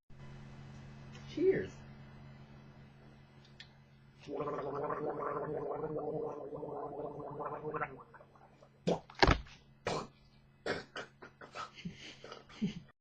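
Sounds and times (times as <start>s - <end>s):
person gargling: 4.2s - 9.1s, 9.9s - 10.1s, 10.7s - 11.4s
loud thump: 9.2s - 9.5s.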